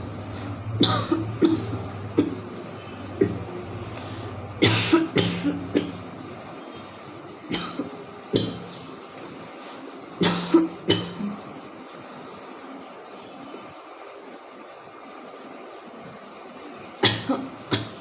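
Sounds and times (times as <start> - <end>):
woman coughing: 0.8 - 2.4, 4.6 - 6.0, 7.5 - 8.7, 10.2 - 11.4, 17.0 - 18.0.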